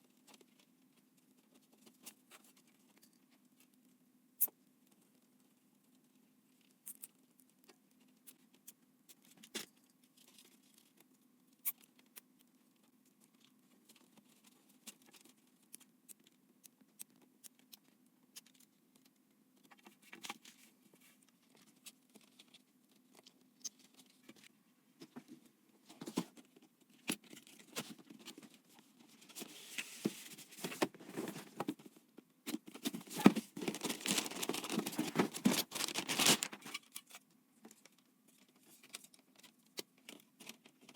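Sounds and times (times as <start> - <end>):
rustling and scraping: 19.7 - 40.9.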